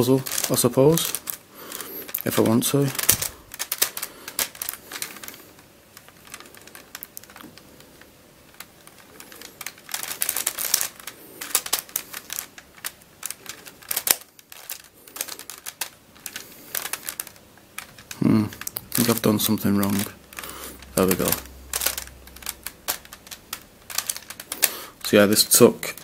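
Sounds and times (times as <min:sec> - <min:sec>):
plastic puzzle pieces clicking: 0:00.0 - 0:26.0.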